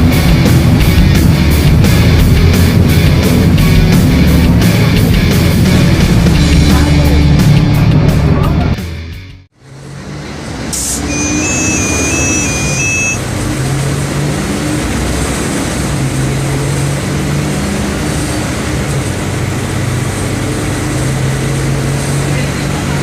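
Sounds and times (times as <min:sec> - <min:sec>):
bus diesel engine running: 0:09.6 - 0:23.0.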